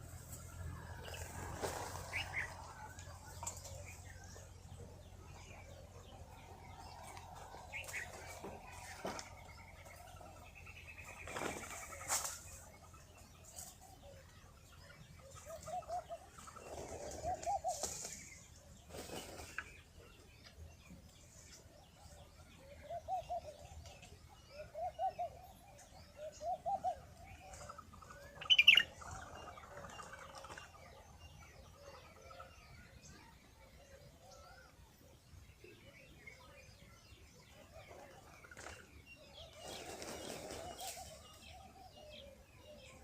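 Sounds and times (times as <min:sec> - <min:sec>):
pigeons cooing: 0:15.2 - 0:18.0.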